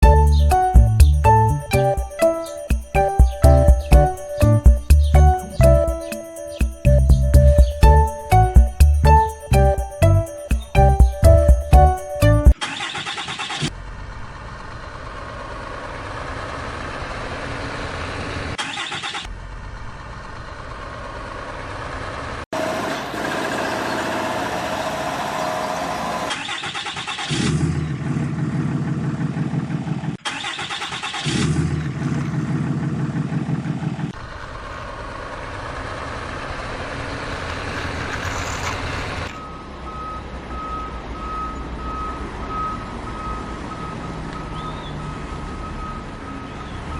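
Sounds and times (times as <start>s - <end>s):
heavy vehicle engines running: 0.0s - 12.6s, 13.7s - 18.6s, 19.3s - 26.4s, 31.8s - 46.9s
reversing beeper: 39.3s - 46.9s.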